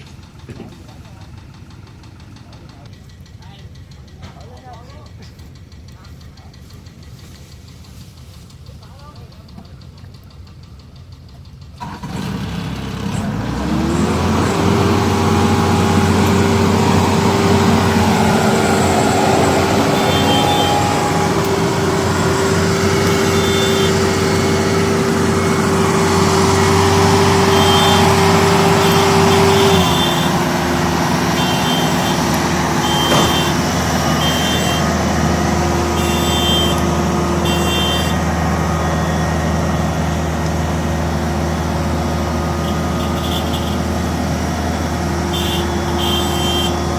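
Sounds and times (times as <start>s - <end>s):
large diesel engine revving: 0.0s - 46.9s
short high-pitched beeps: 31.4s - 34.9s.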